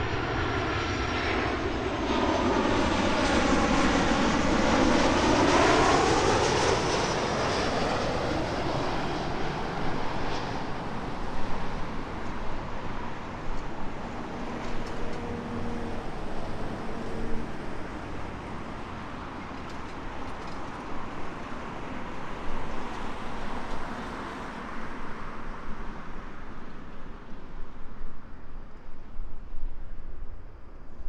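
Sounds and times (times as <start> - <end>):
distant engines rumbling: 2.9 - 25.4.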